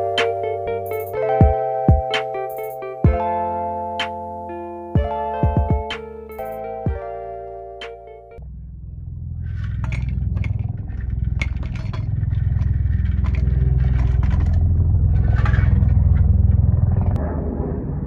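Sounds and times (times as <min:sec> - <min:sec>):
low rumbling: 0:08.3 - 0:18.0
scraping and clattering: 0:09.4 - 0:17.2.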